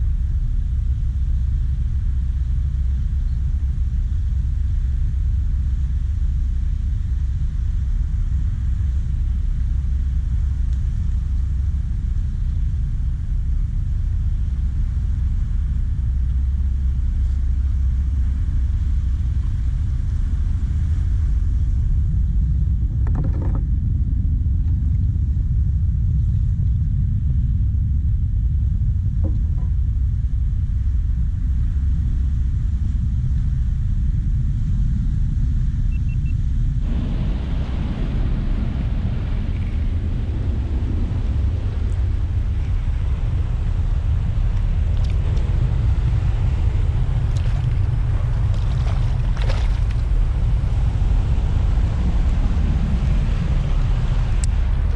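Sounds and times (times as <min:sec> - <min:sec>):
wind buffeting microphone: 0:00.0 - 0:54.9.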